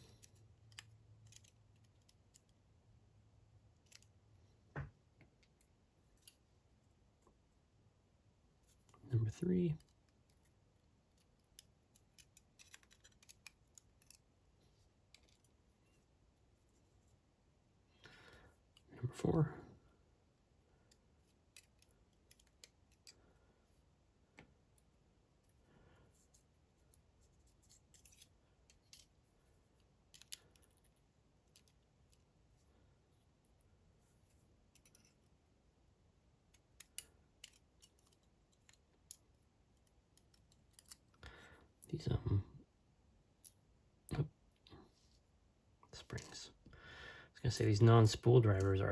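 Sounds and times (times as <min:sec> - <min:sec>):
metallic clicks of lock parts: 0:00.1 - 0:02.6, 0:03.8 - 0:04.1, 0:11.1 - 0:14.2, 0:20.9 - 0:23.2, 0:27.6 - 0:29.1, 0:30.1 - 0:32.2, 0:34.7 - 0:35.2, 0:36.5 - 0:41.2.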